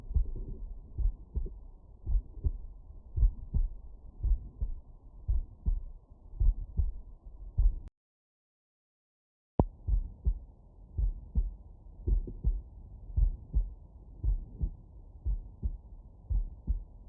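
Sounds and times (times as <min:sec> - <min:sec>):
heartbeat through stethoscope: 0:00.0 - 0:07.9, 0:09.6 - 0:17.0.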